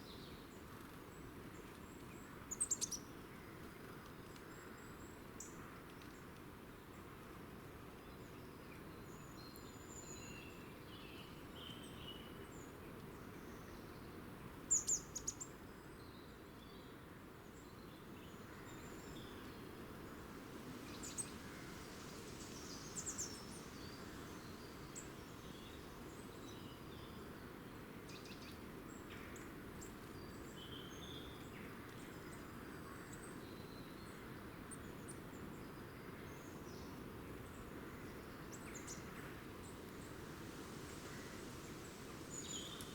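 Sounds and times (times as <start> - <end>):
background hiss: 17.8 - 33.2, 34.3 - 42.9.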